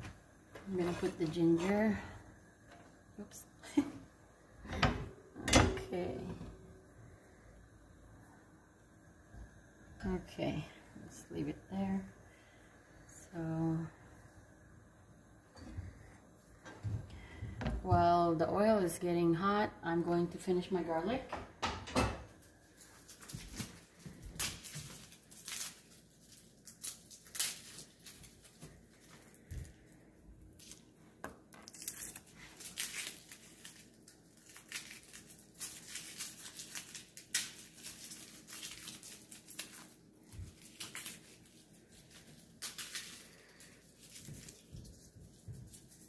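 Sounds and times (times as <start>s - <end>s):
garlic skins crackling and rustling: 0.6s - 2.1s, 22.4s - 46.0s.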